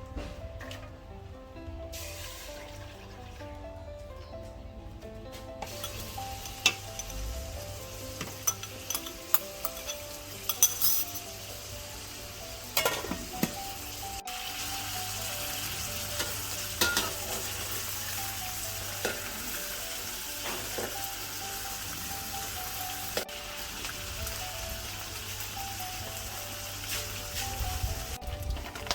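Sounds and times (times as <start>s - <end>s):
quiet background music: 0.0s - 28.9s
food sizzling in a pan: 1.9s - 2.7s, 5.6s - 28.2s.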